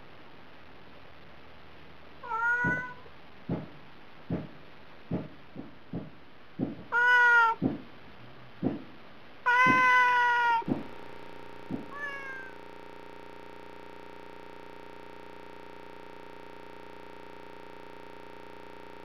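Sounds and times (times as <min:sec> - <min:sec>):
cat meowing: 0:02.2 - 0:03.1, 0:06.9 - 0:07.6, 0:09.5 - 0:10.7, 0:11.8 - 0:12.6
soft thumps: 0:08.6 - 0:08.9.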